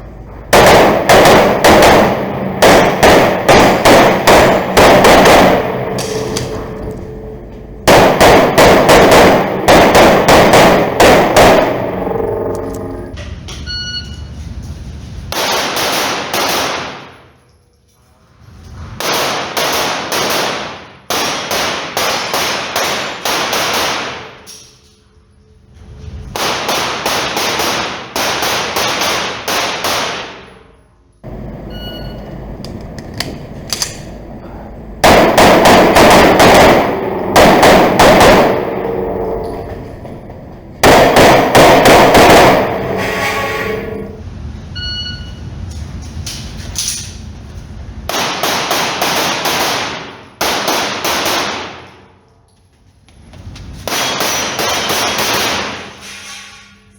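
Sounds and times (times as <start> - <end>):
rapid pistol shots: 0.5 - 6.7, 7.9 - 12.6, 15.3 - 17.1, 19.0 - 24.5, 26.4 - 30.5, 35.0 - 39.4, 40.8 - 43.0, 48.1 - 52.0, 53.8 - 56.0.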